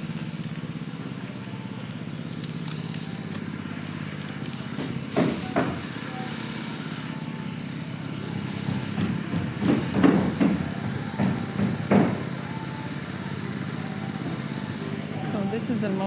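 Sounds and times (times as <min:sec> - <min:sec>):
low engine drone: 0:00.0 - 0:16.0
irregular knocks: 0:08.7 - 0:12.2.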